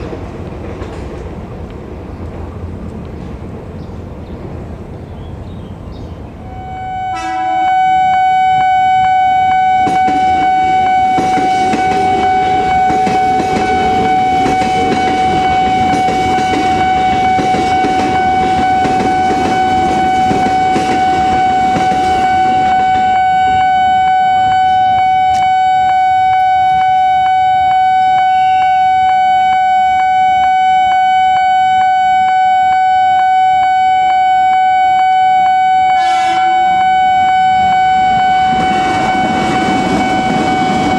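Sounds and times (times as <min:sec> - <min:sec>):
electric train passing: 0:00.0 - 0:40.9
level crossing alarm tone: 0:06.4 - 0:40.9
alarm clicks: 0:08.9 - 0:35.9, 0:36.6 - 0:40.9.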